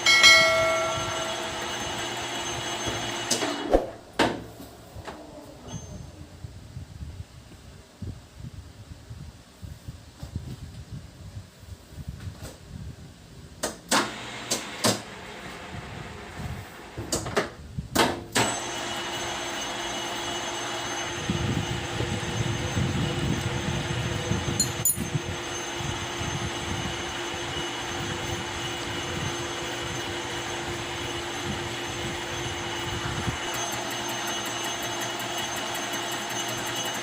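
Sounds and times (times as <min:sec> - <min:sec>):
lathe motor hum and whine: 0:00.0 - 0:03.7, 0:14.0 - 0:17.1, 0:18.4 - 0:37.0.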